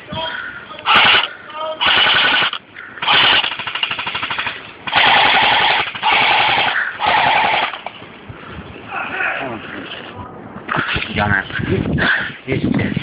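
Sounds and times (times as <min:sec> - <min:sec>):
airsoft gun full-auto bursts: 0:00.9 - 0:07.9.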